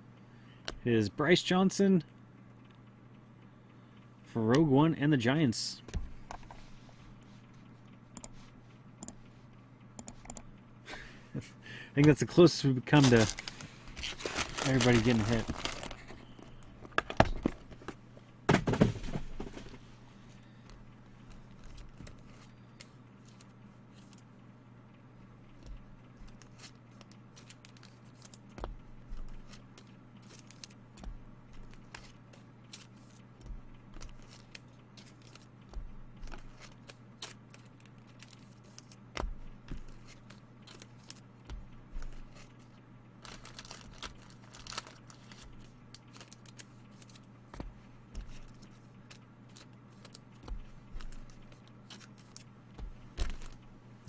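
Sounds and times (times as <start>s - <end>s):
steady low hum: 0.0s - 54.0s
wrappers crinkling: 12.9s - 16.8s, 26.2s - 33.2s, 36.2s - 39.0s, 43.2s - 47.3s
cards tapping and rustling: 12.9s - 19.8s, 25.6s - 53.6s.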